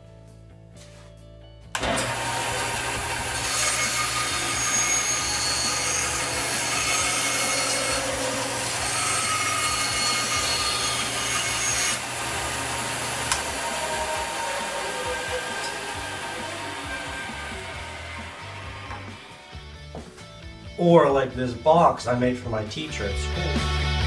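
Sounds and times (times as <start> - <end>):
power tool motor hum: 1.8 - 19.5
loud rasping on wood: 2.1 - 19.2.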